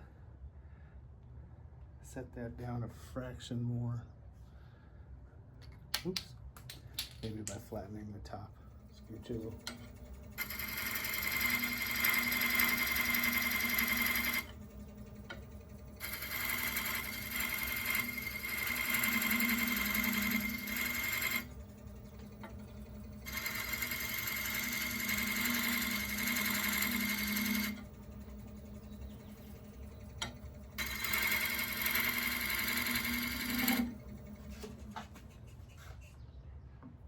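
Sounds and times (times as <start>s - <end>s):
lathe motor hum: 8.7s - 35.4s
chisel cutting spinning wood: 8.9s - 35.4s.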